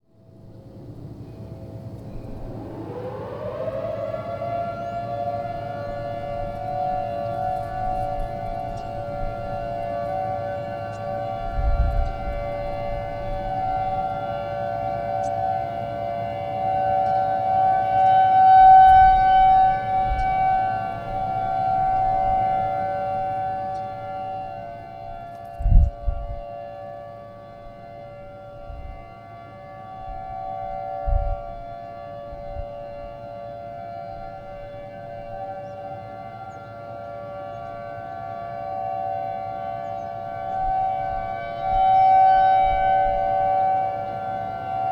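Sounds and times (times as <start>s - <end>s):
tornado warning siren: 0.1s - 44.9s.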